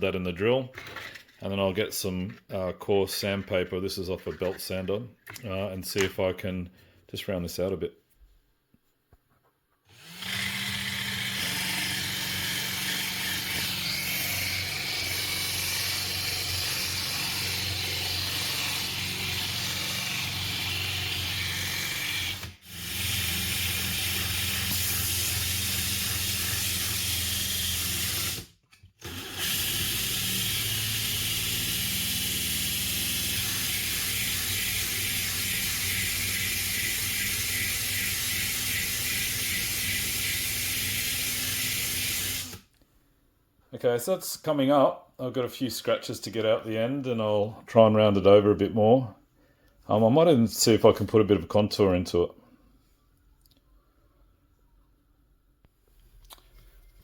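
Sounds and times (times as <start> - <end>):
electric drill motor hum: 9.9 - 42.6.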